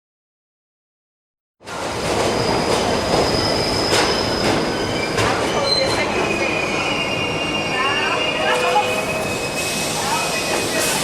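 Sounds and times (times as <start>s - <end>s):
subway train running on rails: 1.6s - 11.0s
wheel squeal: 2.3s - 11.0s.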